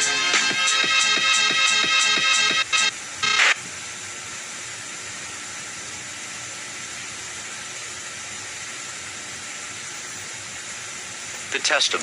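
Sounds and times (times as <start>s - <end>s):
static hiss: 0.0s - 12.0s.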